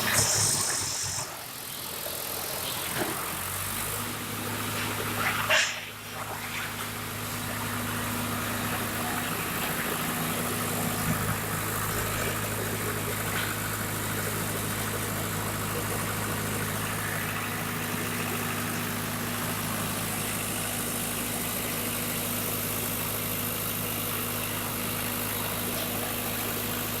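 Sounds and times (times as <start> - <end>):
wood chipper diesel engine running: 0.0 - 27.0.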